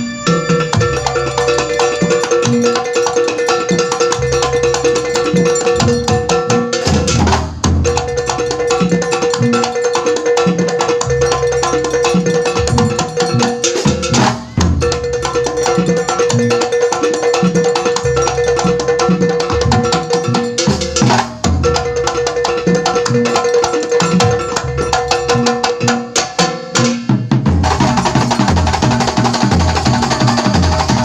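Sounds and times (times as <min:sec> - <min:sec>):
steady held note: 0:00.0 - 0:02.9
frame drums beating fast rhythm: 0:00.0 - 0:31.0.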